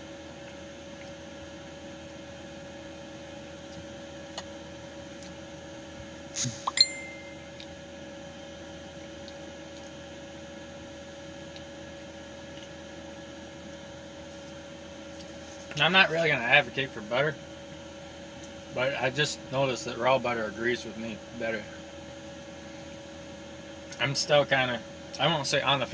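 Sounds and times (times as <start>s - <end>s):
steady electrical hum: 0.0s - 25.9s
short ringing clink: 6.7s - 7.5s.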